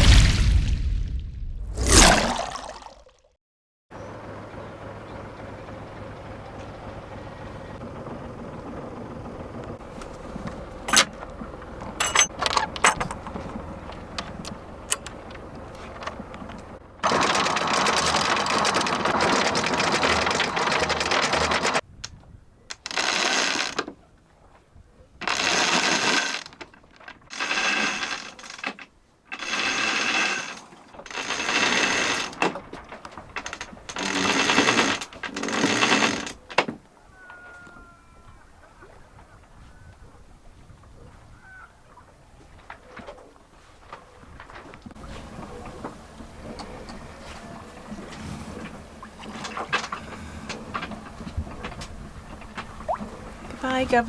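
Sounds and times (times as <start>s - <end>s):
anchor windlass hauling chain: 5.7s - 21.8s, 22.7s - 24.0s, 25.2s - 36.8s, 44.3s - 54.0s
metallic clinks: 12.0s - 13.3s.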